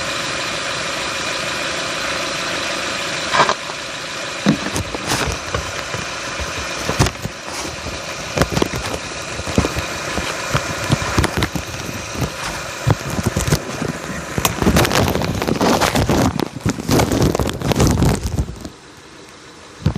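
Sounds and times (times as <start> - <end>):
car running noise: 0.0 - 19.9.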